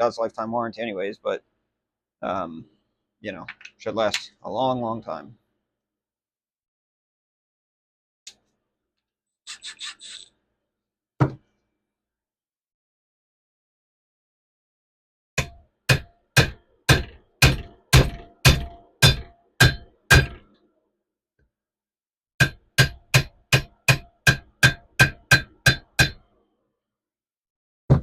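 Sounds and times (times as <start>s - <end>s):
hammer knocking on metal: 15.4s - 20.4s.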